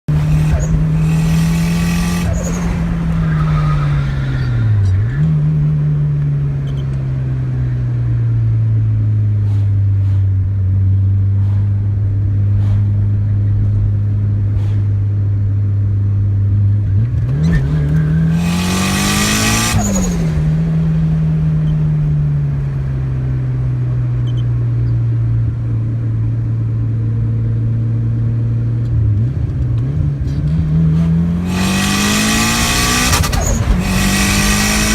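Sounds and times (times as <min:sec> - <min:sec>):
turbocharged car engine revving: 0:00.0 - 0:06.1, 0:16.8 - 0:22.2, 0:29.2 - 0:34.9.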